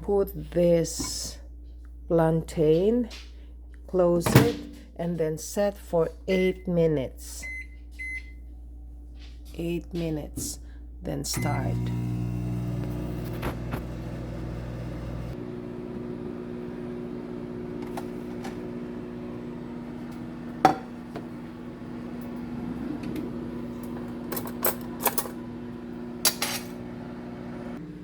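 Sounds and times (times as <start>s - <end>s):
microwave oven humming: 11.3s - 28.0s.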